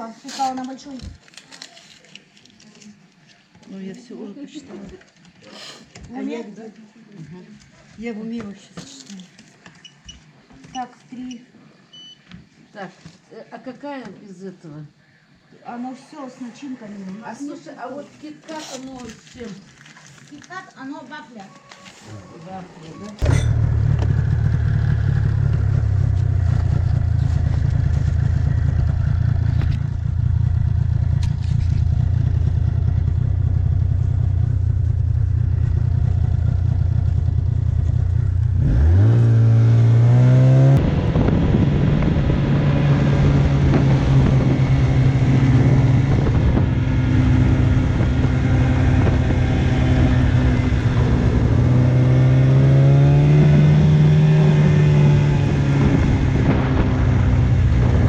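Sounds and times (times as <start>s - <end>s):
vehicle engine revving: 23.2s - 58.0s.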